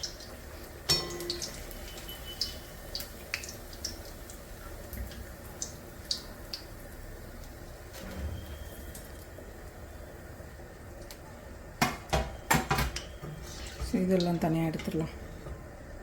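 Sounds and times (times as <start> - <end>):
food sizzling in hot oil: 0.0 - 10.9
metal utensil clink: 0.9 - 1.5.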